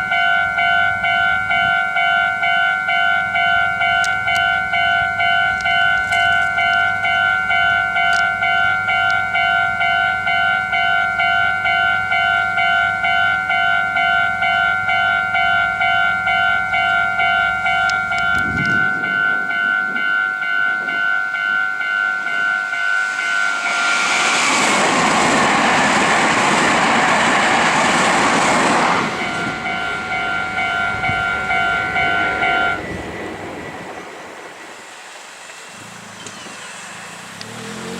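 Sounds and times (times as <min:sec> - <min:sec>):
level crossing alarm dings: 0:00.0 - 0:23.8, 0:29.1 - 0:33.0
train passing: 0:00.0 - 0:37.9.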